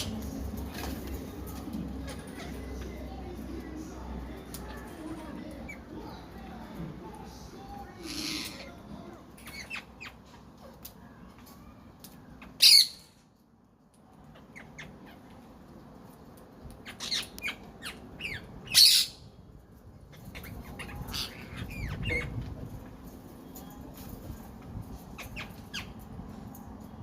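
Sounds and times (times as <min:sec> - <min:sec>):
parrot squawking: 0:02.0 - 0:02.9, 0:07.9 - 0:10.4, 0:12.4 - 0:13.2, 0:16.8 - 0:19.2, 0:20.1 - 0:22.5
parrot chirps and clicks: 0:16.4 - 0:18.5.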